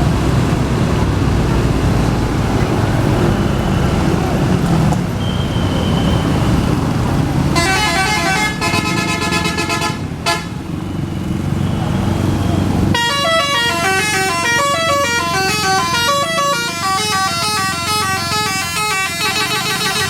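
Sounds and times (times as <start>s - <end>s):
low rumble of engines: 0.0s - 20.0s
street noise: 0.0s - 20.0s
multi-tone musical bus horn: 7.5s - 10.7s, 12.9s - 20.0s.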